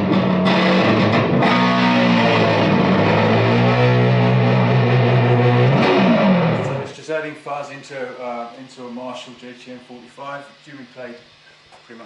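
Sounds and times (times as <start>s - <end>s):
fuzz-distorted electric guitar chords: 0.0s - 7.1s.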